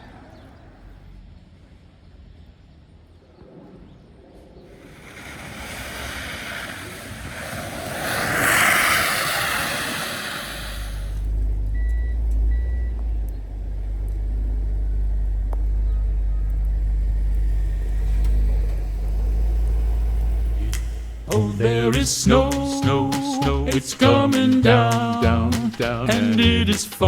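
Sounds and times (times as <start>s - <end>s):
vehicle tyres hissing on slush: 4.7s - 12.2s, 12.8s - 26.4s
low rumble: 4.7s - 27.0s.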